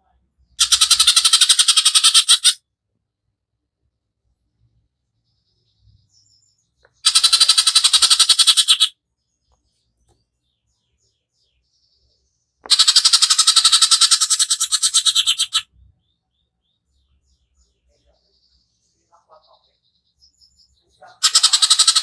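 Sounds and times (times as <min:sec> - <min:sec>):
bird rattling calls: 0:00.6 - 0:02.6, 0:07.0 - 0:08.9, 0:12.7 - 0:15.7, 0:21.2 - 0:22.0.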